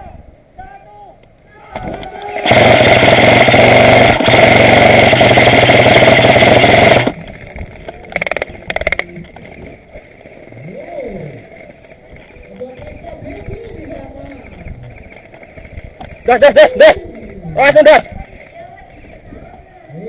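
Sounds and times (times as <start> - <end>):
airsoft gun firing full-auto bursts: 2.4 - 7.2.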